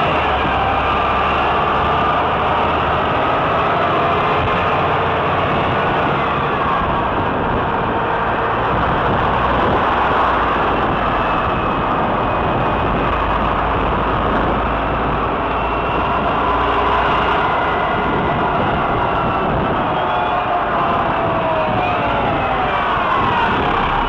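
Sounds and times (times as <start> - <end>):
wind and road noise: 0.0 - 24.0.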